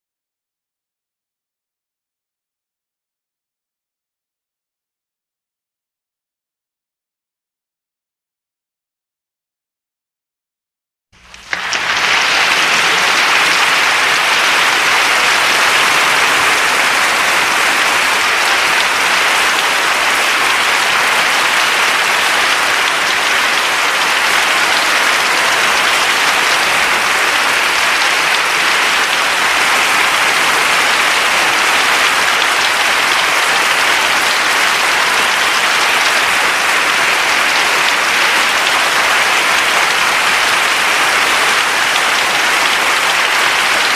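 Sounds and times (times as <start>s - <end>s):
crowd applause: 11.2s - 43.9s.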